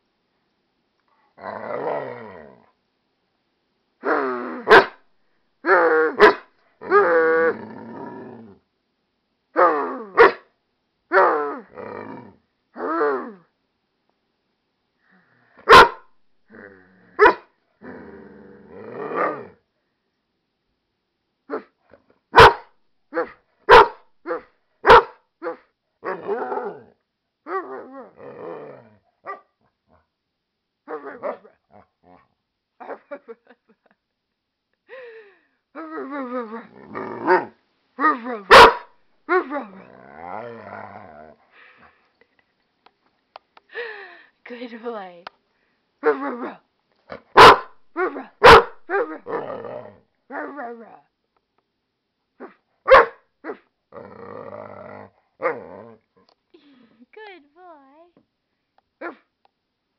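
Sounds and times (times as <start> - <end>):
dog growling: 1.4 - 2.8, 6.8 - 8.7, 11.2 - 13.4, 16.5 - 19.6, 26.0 - 29.0, 35.8 - 38.7, 39.3 - 42.0, 48.9 - 51.1, 53.5 - 56.2
dog barking: 4.7 - 5.0, 6.2 - 6.5, 10.2 - 10.4, 15.7 - 16.1, 17.2 - 17.5, 22.3 - 25.6, 38.5 - 39.0, 47.4 - 49.2, 52.4 - 53.2.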